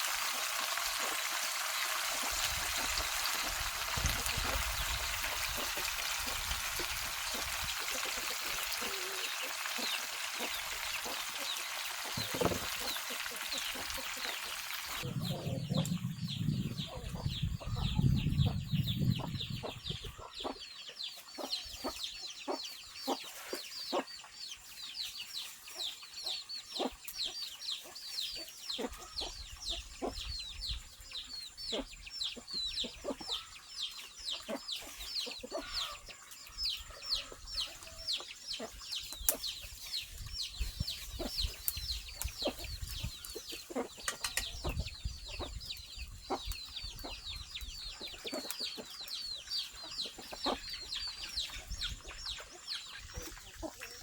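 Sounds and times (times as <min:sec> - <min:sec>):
chickens clucking and cheeping: 0:00.0 - 0:54.0
low rumble: 0:15.0 - 0:20.1.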